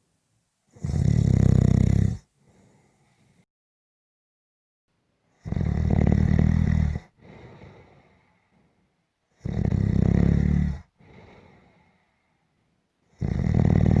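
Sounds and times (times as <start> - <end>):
person snoring: 0.8 - 2.2, 9.4 - 11.4, 13.2 - 14.0
soft breathing: 2.4 - 3.4, 7.1 - 9.0, 10.8 - 12.7.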